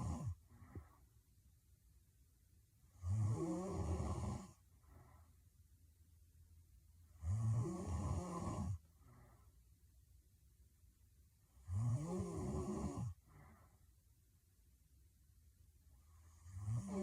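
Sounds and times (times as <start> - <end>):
woman snoring: 0.0 - 0.4, 3.0 - 4.6, 7.2 - 8.8, 11.6 - 13.2, 16.2 - 17.0
soft breath out: 0.3 - 1.2, 4.7 - 5.5, 8.9 - 9.6, 13.2 - 14.0.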